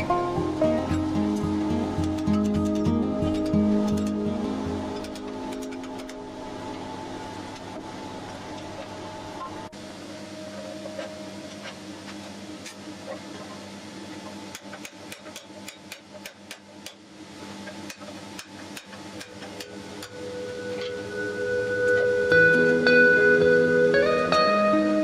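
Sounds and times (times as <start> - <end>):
steady hum: 0.0 - 25.0
hammer striking steel: 2.0 - 4.2, 17.8 - 20.2.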